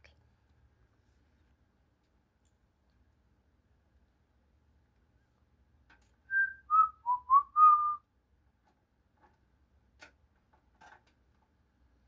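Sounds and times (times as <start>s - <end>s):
person whistling a tune: 6.3s - 8.0s.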